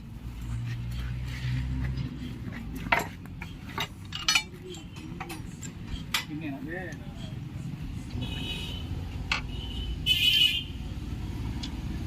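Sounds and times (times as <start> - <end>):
metal tools clinking: 2.8 - 7.5.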